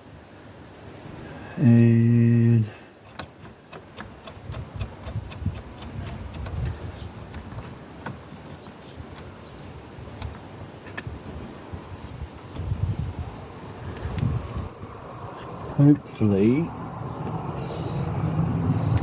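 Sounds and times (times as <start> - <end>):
ratcheting metallic clicks: 3.0 - 6.7.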